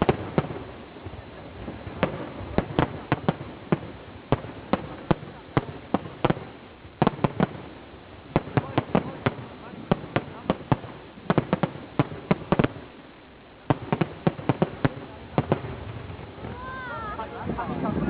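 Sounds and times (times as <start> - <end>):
fireworks bangs: 0.0 - 18.0.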